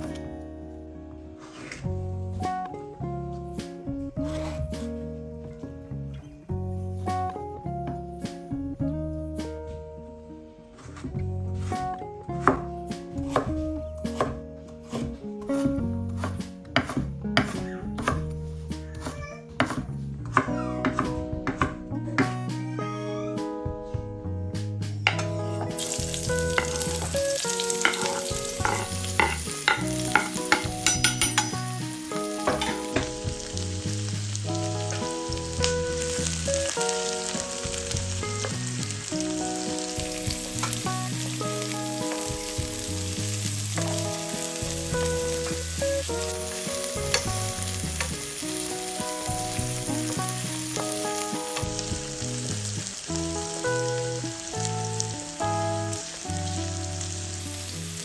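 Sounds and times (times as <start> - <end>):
light background music: 0.0 - 58.0
food sizzling in a pan: 25.1 - 58.0.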